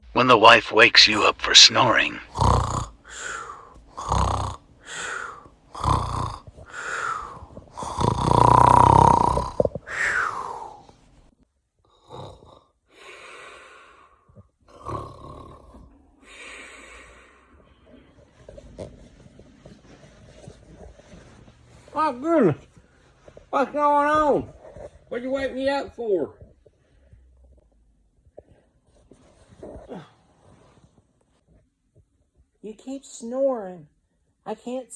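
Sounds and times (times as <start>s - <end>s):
man snoring: 1.1s - 11.0s, 12.0s - 12.6s, 14.8s - 15.7s
hissing breaths: 1.1s - 11.2s.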